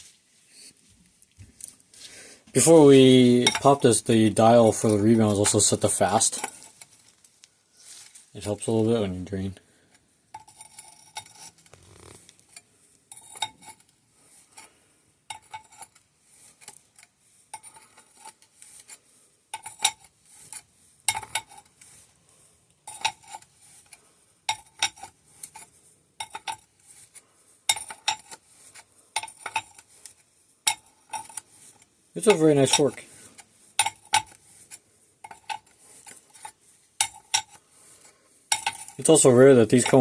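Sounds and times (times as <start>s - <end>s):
metal parts clinking and clattering: 10.3s - 14.7s, 15.3s - 21.8s, 22.8s - 40.0s.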